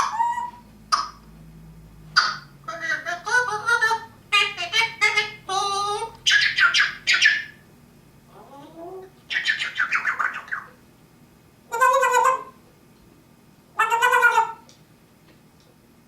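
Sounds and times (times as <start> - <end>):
parrot squawking and chattering: 0.0 - 1.2, 2.1 - 7.6, 8.3 - 10.8, 11.7 - 12.6, 13.7 - 14.7.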